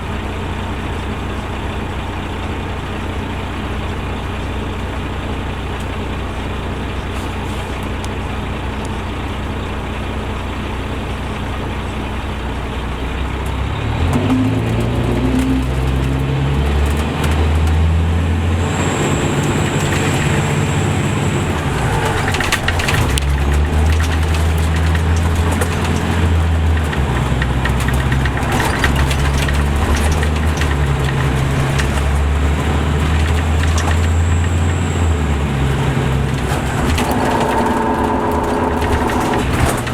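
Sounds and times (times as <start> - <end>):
coach diesel engine: 0.0 - 39.9.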